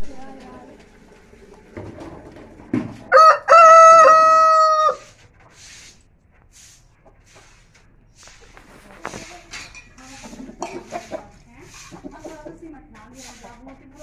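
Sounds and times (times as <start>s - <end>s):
rooster crowing: 3.1s - 5.2s.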